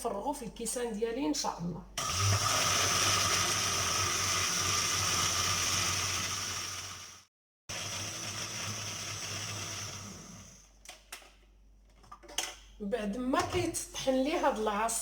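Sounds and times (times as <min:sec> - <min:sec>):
blender running: 0:02.0 - 0:10.7.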